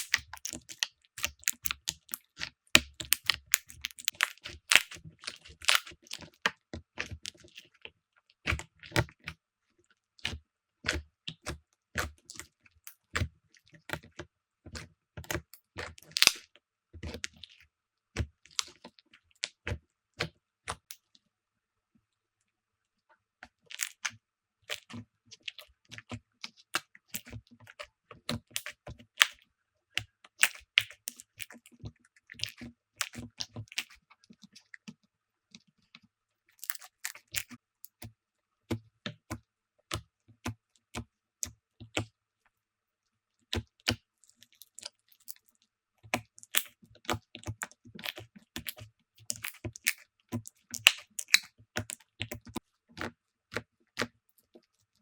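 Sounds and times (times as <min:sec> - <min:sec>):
slime being squeezed: 0:00.0 - 0:02.1, 0:02.8 - 0:05.9, 0:50.7 - 0:52.0.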